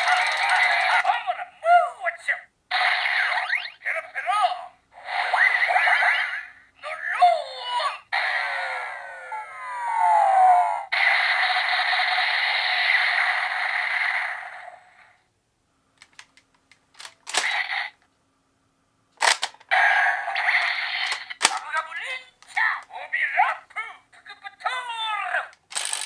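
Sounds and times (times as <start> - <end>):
toy gun clicks: 0.0 - 1.1, 16.0 - 18.0, 19.2 - 19.7, 20.9 - 22.6, 25.5 - 26.0.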